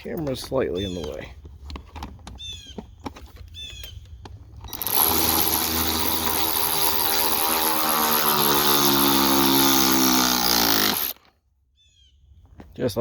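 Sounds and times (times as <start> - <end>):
power drill motor running: 4.7 - 11.2.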